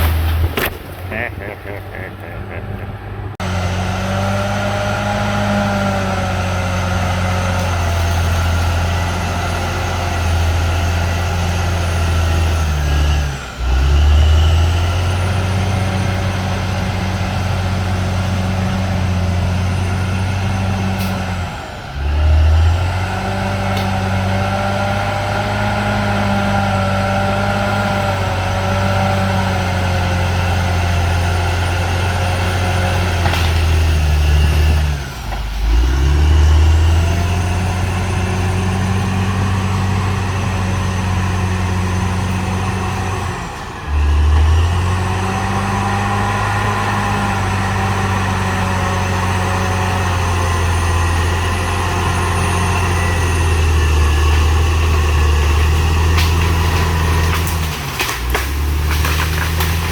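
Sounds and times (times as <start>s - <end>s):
bulldozer diesel engine: 0.0s - 59.9s.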